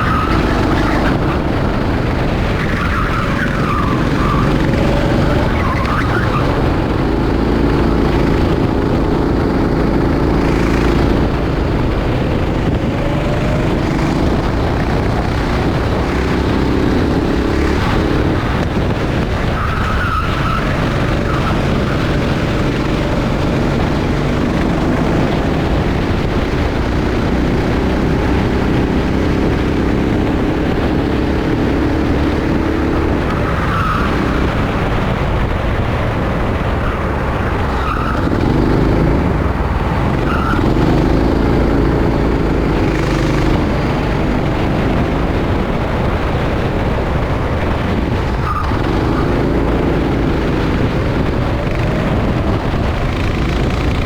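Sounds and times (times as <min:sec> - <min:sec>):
tyre squeals: 0:00.0 - 0:06.9
kart engine running: 0:00.0 - 0:54.0.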